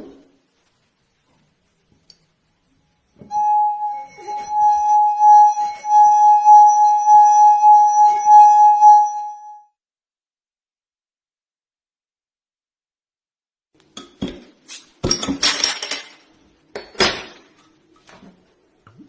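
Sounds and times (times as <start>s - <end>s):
whistle-like glass tone: 3.1s - 9.8s.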